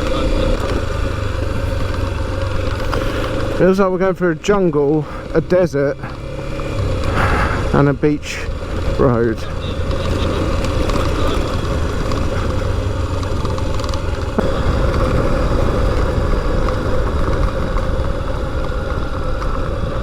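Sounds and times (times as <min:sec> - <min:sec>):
motorcycle engine rumbling: 0:00.0 - 0:20.0.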